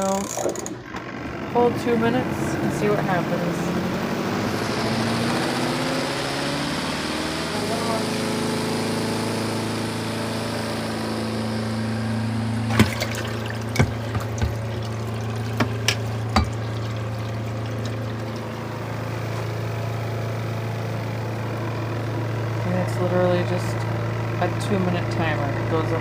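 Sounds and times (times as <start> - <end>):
washer motor humming: 0.0 - 26.0
water trickling: 12.6 - 20.4.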